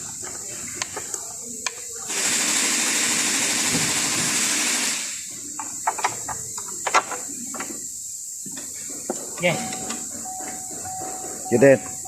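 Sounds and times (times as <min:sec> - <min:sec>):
steady hiss: 0:00.0 - 0:12.0
sharp clicks and knocks: 0:05.6 - 0:07.8.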